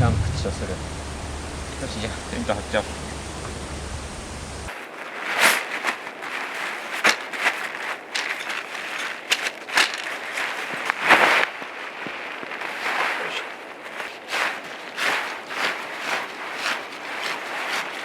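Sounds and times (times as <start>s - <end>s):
low steady hum: 0.0s - 4.7s
camping gear rustling and crunching: 3.5s - 18.0s.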